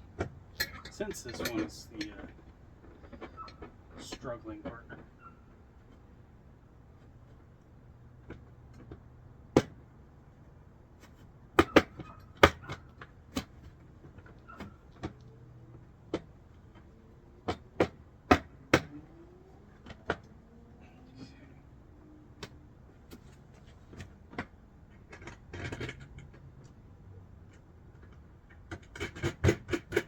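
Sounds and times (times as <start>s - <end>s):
metal parts clicking and knocking: 0.2s - 4.1s, 27.4s - 30.0s.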